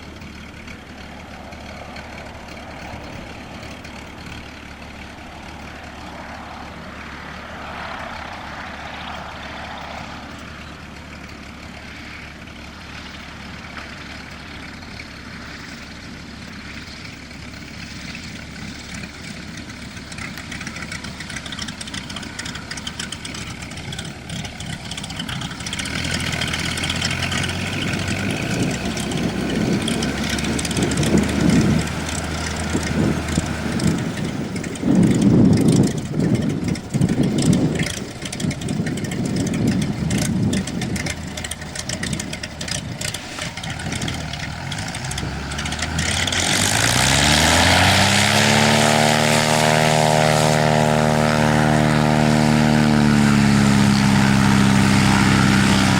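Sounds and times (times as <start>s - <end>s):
propeller plane engine: 0.0s - 55.9s
gusty wind noise: 21.0s - 55.9s.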